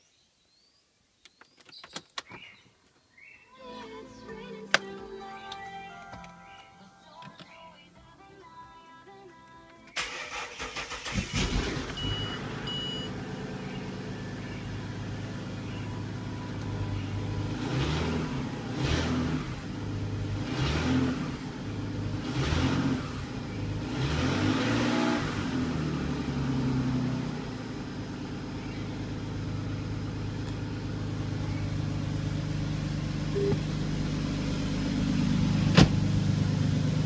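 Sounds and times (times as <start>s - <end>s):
car engine cranking and starting: 9.9s - 37.0s
engine revving in blips: 10.0s - 37.0s
engine running through leaking exhaust: 10.0s - 37.0s.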